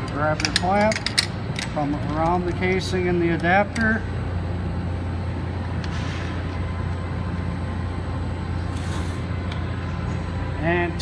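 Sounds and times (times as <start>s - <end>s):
low background hum: 0.0s - 11.0s
clamp scraping on pump casing: 8.6s - 9.3s.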